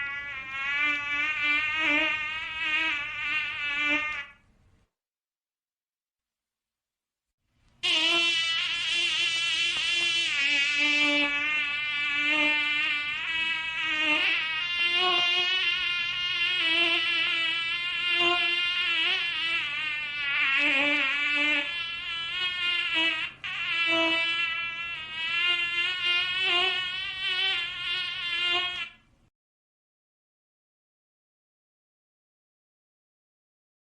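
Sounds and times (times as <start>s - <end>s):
mosquito whining in flight: 7.8s - 29.0s.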